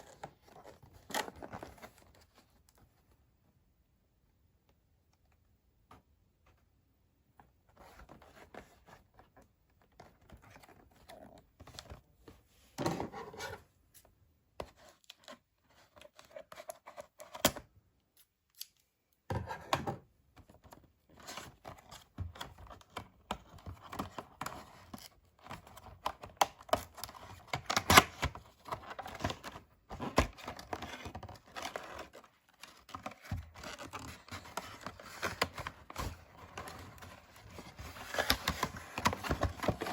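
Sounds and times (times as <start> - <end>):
cardboard and plastic packaging opened: 0.0 - 2.8, 20.4 - 39.9.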